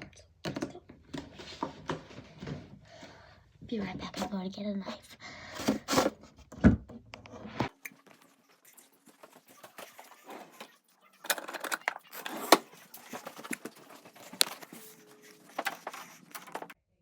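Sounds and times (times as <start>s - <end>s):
clicks knocks and rustles: 11.3s - 16.8s.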